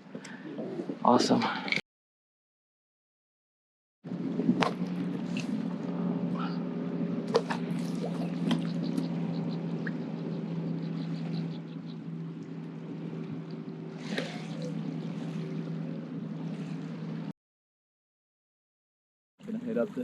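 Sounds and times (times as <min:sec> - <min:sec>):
boat motor humming: 0:04.1 - 0:17.3.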